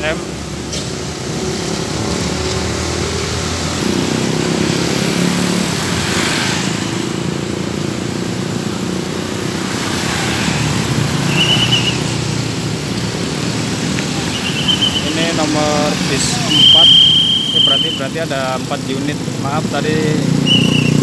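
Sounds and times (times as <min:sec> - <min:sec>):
bus diesel engines droning: 0:00.0 - 0:21.0
high chirp: 0:14.3 - 0:15.2, 0:20.4 - 0:21.0.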